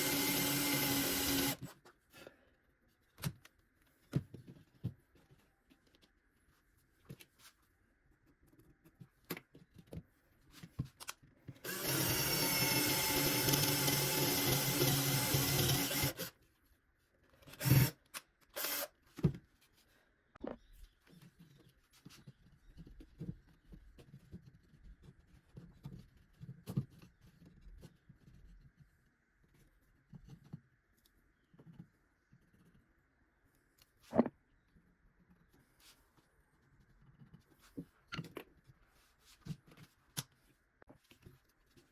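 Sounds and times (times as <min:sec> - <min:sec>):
power drill drilling into wood: 0:00.0 - 0:01.6, 0:11.6 - 0:16.3, 0:17.6 - 0:18.0, 0:18.6 - 0:18.9.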